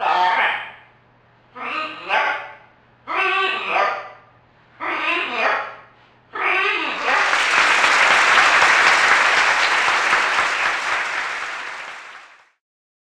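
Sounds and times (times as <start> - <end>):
applause: 6.9 - 12.6.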